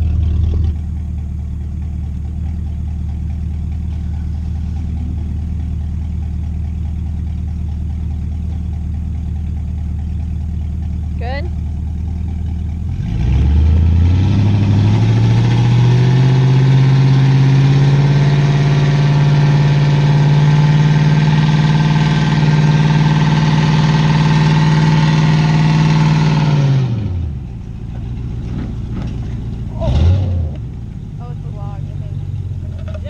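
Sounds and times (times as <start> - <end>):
pickup truck engine revving: 3.2 - 7.4, 12.8 - 33.0.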